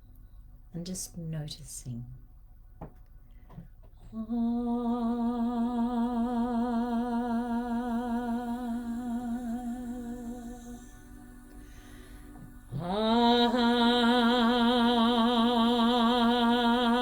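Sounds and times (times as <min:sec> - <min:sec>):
soft breath: 0:10.7 - 0:12.7.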